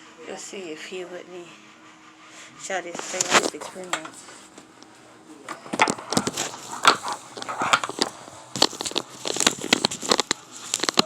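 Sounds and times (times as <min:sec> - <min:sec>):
crackling and rustling: 0:02.8 - 0:11.0.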